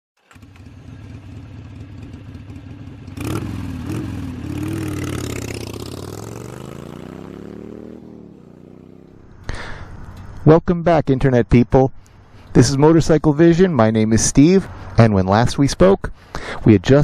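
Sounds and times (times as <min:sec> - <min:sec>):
motorcycle engine revving: 0:00.2 - 0:09.5.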